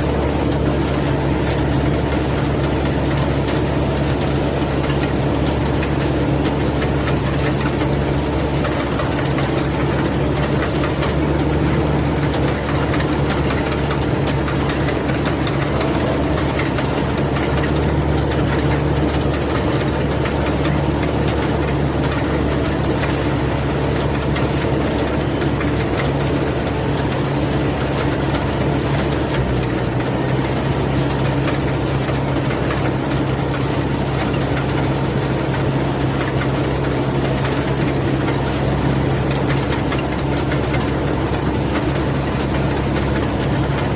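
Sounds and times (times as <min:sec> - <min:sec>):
combine harvester engine humming: 0:00.0 - 0:43.9.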